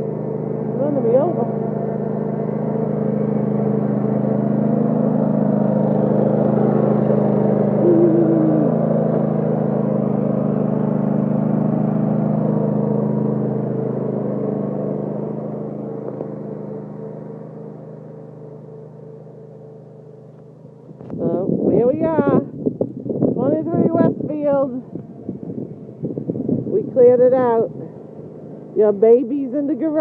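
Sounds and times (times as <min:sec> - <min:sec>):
lawn tractor engine running: 0:00.0 - 0:21.0, 0:27.1 - 0:30.0.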